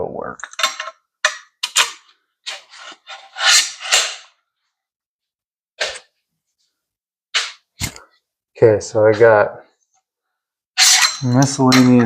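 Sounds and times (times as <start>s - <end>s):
metal parts scraping and rubbing: 1.6s - 4.4s, 10.8s - 12.0s.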